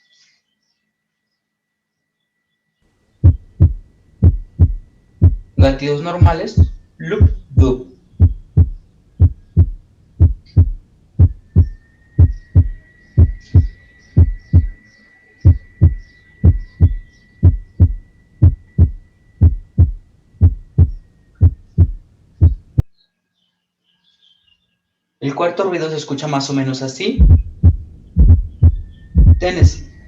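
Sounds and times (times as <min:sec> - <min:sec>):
heartbeat through stethoscope: 0:03.2 - 0:14.8, 0:15.4 - 0:22.9, 0:27.2 - 0:29.8.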